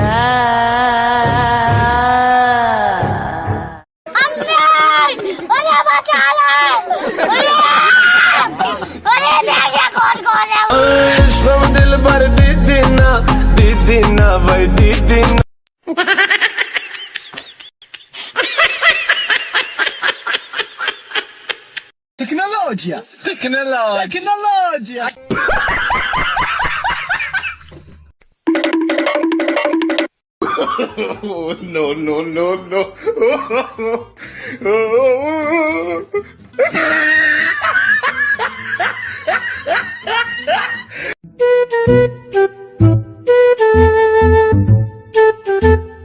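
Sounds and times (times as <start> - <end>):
burst of laughter: 36.6 - 40.9.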